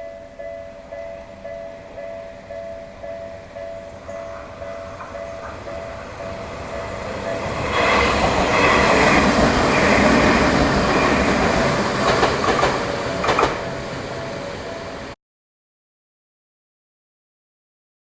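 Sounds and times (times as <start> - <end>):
crossing warning bell: 0.0 - 15.2
electric train running noise: 0.0 - 15.2
wheel clacks over rail joints: 4.1 - 14.0.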